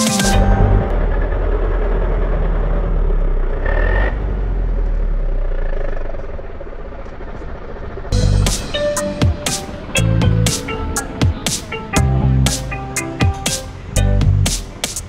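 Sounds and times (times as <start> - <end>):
short high tone: 0.0 - 1.6
engine and road rumble: 0.0 - 15.0.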